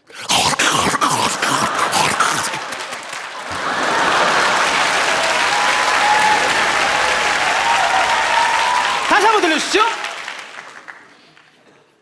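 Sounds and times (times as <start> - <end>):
crunching and chomping mouth noises: 0.0 - 3.4
studio audience applause: 0.1 - 11.6.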